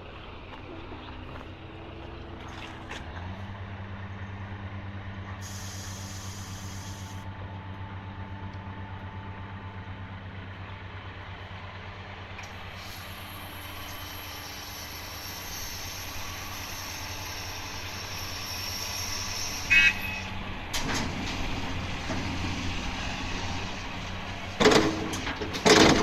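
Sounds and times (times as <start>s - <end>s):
excavator diesel engine running: 0.0s - 26.0s
hiss: 5.4s - 7.2s, 12.6s - 20.3s.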